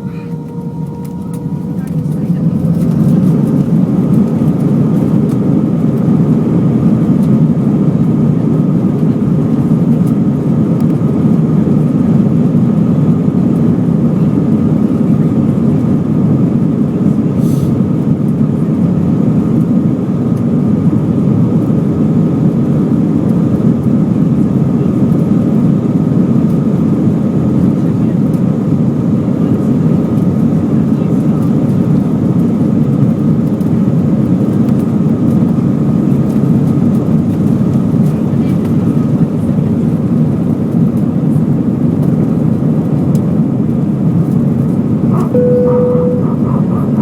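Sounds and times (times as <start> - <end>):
faint steady whine: 0.0 - 4.8, 45.3 - 47.0
airplane cabin airflow and engine rush: 0.0 - 47.0.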